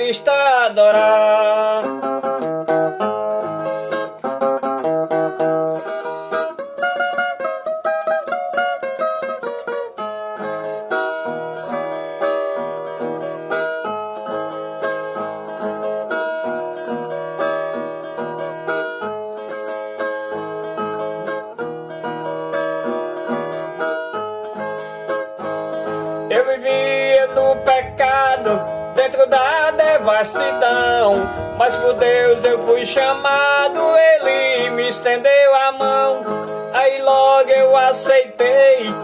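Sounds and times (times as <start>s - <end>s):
plucked viola melody: 25.4s - 36.6s
repeating bass line: 26.9s - 33.9s.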